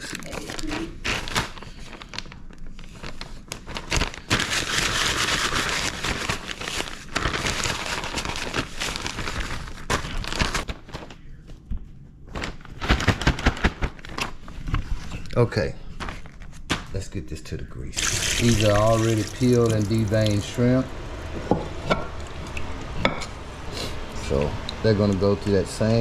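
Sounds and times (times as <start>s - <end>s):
plastic bag crinkling: 0.0s - 11.2s, 18.0s - 20.8s.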